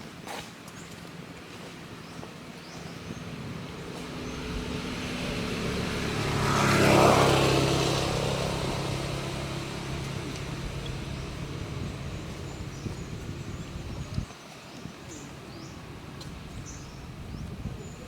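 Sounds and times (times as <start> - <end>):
motor vehicle driving past: 2.7 - 14.3.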